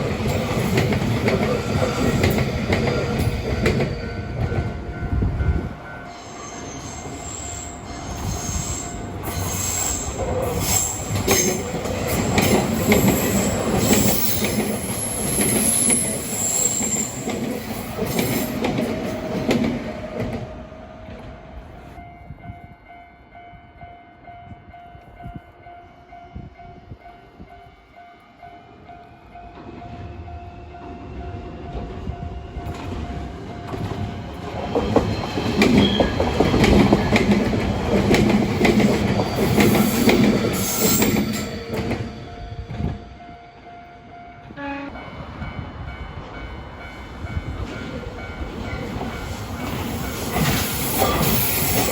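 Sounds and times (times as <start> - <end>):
train clattering over rail joints: 0.0 - 5.9, 8.0 - 22.0, 32.6 - 43.0, 46.4 - 51.9.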